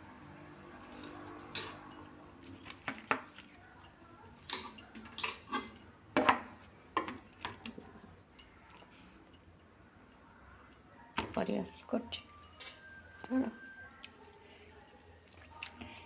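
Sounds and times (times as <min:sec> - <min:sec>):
metal spoon scraping a pan: 0:00.3 - 0:03.2, 0:04.4 - 0:07.2.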